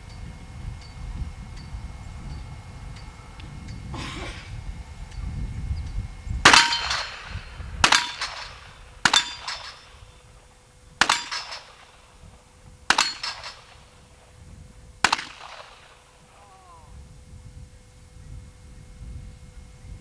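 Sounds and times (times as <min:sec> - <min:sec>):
revolver gunshots: 0:06.5 - 0:14.4, 0:15.0 - 0:16.8.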